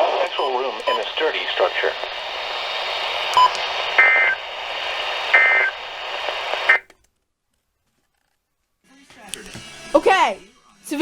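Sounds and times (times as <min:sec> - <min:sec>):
radio static hiss: 0:00.0 - 0:06.8
two-tone digital data bursts: 0:03.3 - 0:06.8.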